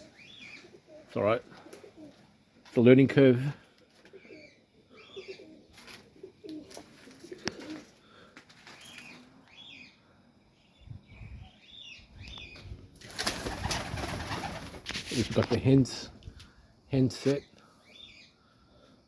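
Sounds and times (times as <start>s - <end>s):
pigeons cooing: 0.0s - 2.5s, 3.5s - 9.4s, 13.1s - 15.0s
wings flapping: 13.0s - 15.4s.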